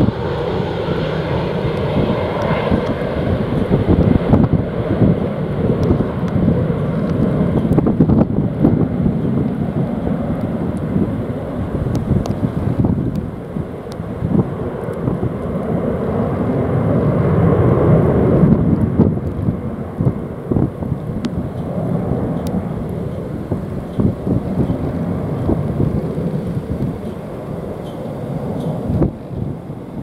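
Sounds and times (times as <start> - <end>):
wind buffeting microphone: 0.0 - 30.0
thumps from wind gusts: 1.7 - 13.4, 18.4 - 27.3, 27.9 - 29.6.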